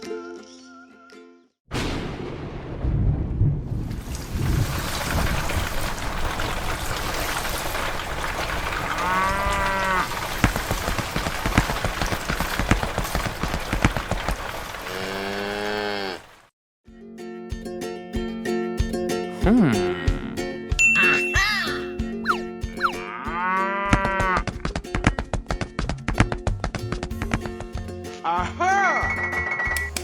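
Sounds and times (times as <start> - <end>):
music: 0.0 - 1.6, 16.9 - 30.0
steady rain: 3.9 - 16.5
cow mooing: 8.9 - 10.2, 14.9 - 16.4, 23.0 - 24.4.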